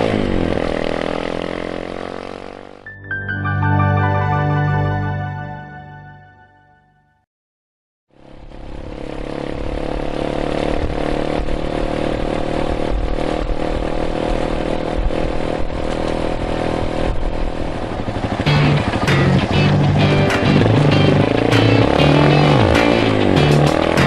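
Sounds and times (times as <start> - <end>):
motorcycle engine running: 0.0 - 2.8, 8.1 - 24.0.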